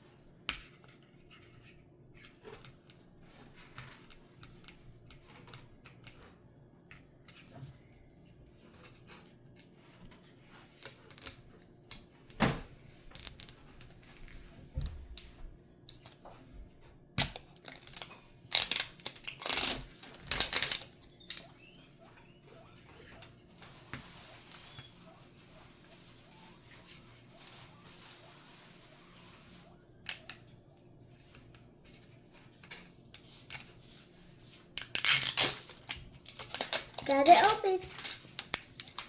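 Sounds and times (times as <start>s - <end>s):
clicks and handling noises: 0.5s - 16.4s, 17.2s - 21.8s, 23.2s - 39.0s
packaging scraping and tearing: 17.2s - 21.6s, 23.6s - 30.3s, 34.6s - 39.0s.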